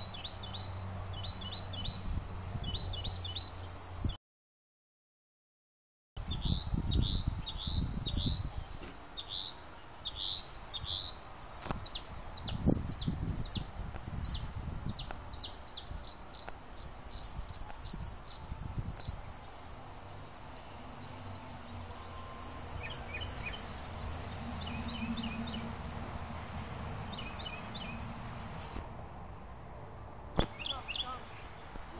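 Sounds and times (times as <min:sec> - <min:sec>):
low rumbling noise: 0:18.0 - 0:31.7.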